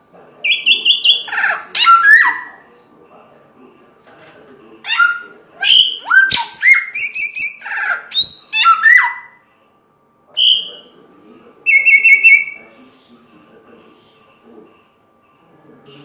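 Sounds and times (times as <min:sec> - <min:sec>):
bird singing whistled notes: 0:00.4 - 0:02.5, 0:05.0 - 0:09.3, 0:10.4 - 0:10.8, 0:11.7 - 0:12.6.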